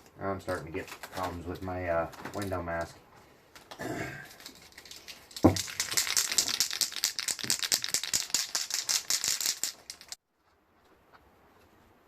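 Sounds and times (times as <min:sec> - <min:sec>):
spray can ball rattling: 0:04.3 - 0:10.2.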